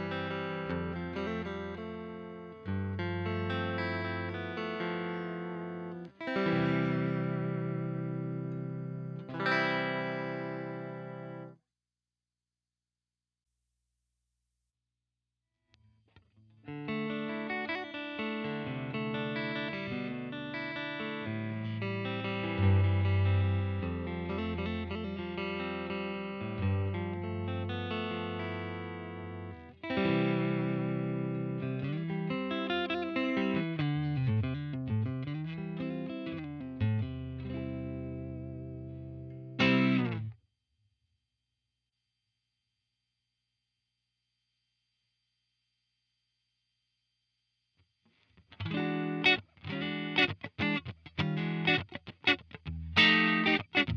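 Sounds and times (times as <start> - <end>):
electric guitar with reverb: 0.0 - 11.6, 16.6 - 40.3, 48.6 - 53.9.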